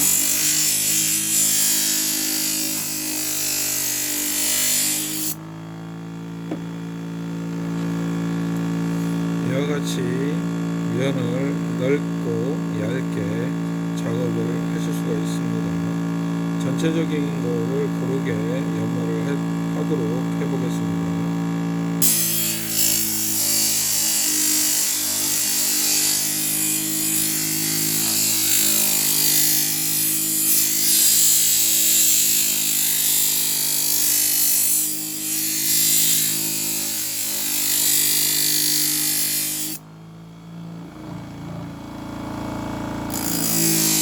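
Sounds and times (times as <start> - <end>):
knife grinding on abrasive wheel: 0.0 - 5.4, 22.0 - 39.8, 43.1 - 44.0
motor hum: 0.0 - 44.0.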